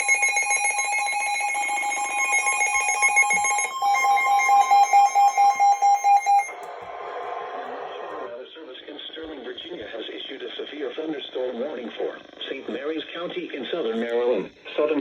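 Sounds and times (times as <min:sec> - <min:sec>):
fast loud beeps: 0:00.0 - 0:06.6
warbling electronic alarm tone: 0:00.0 - 0:06.6
radio hiss: 0:07.8 - 0:15.0.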